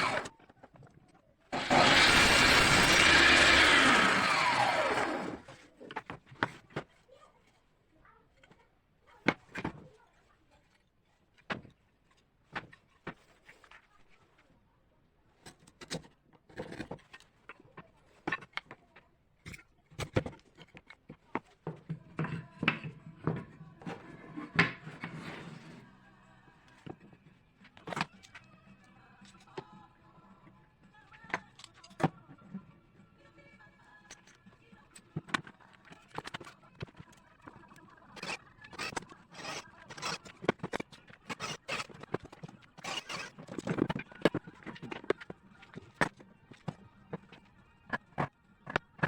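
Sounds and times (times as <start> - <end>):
power tool spinning down: 0.0 - 0.3, 1.5 - 5.6, 41.3 - 42.1, 42.8 - 43.4
knocks and clicks of wood and tools: 0.0 - 7.0, 9.2 - 9.9, 10.6 - 13.8, 15.4 - 25.3, 26.8 - 28.5, 34.1 - 49.0.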